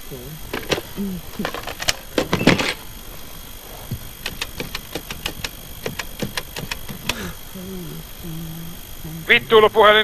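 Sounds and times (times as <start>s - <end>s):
sharp mechanical clicks: 4.2s - 7.3s.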